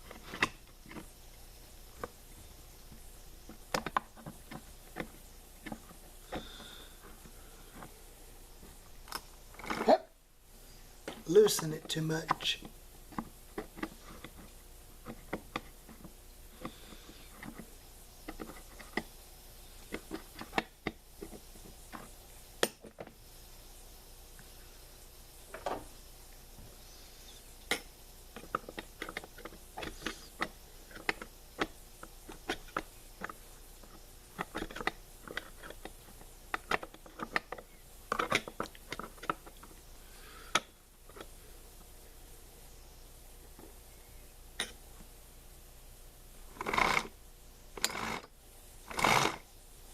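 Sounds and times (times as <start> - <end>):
small metal clicks and rattles: 27.7 - 39.8.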